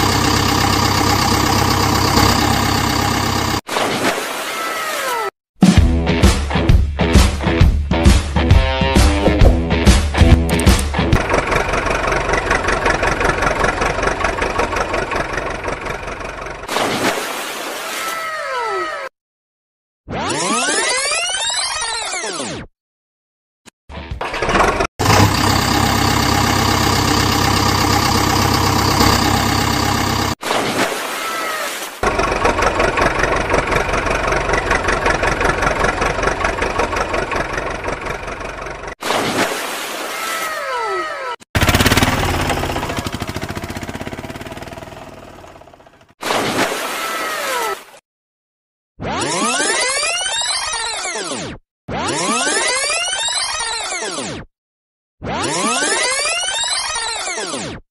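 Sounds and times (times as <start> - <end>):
engine running: 0.0 - 3.6, 10.4 - 16.7, 24.4 - 30.4, 32.0 - 39.0, 41.6 - 46.1.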